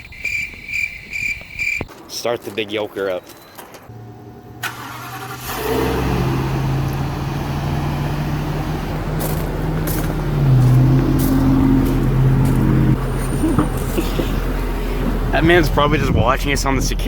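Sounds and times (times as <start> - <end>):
truck engine running: 3.9 - 17.0.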